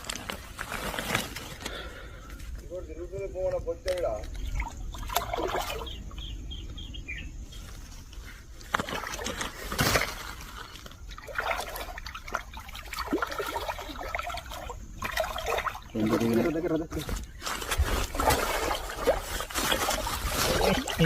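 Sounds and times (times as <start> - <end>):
water splashing and trickling: 3.4 - 6.4, 8.2 - 21.0.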